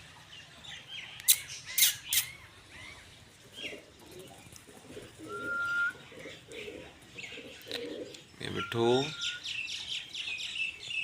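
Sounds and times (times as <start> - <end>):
parrot chirping: 1.2 - 2.9
parrot squawks: 1.3 - 2.4
parrot whistling: 5.3 - 6.0.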